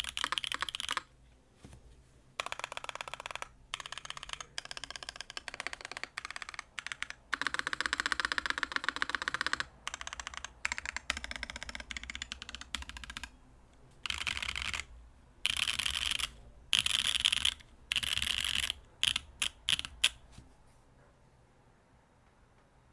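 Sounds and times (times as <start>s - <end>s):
mechanical keyboard typing: 0.0s - 1.1s, 2.4s - 13.4s, 14.0s - 20.2s.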